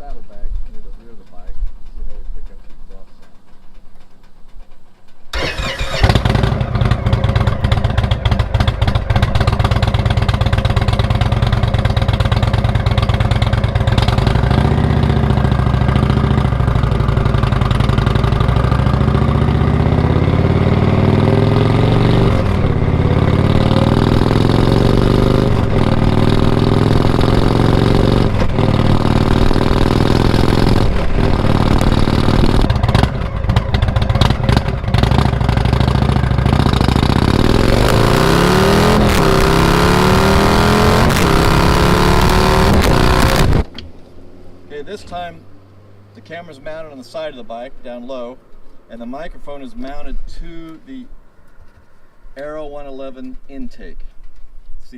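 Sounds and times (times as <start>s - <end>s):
motorcycle engine exhaust: 3.4s - 44.6s.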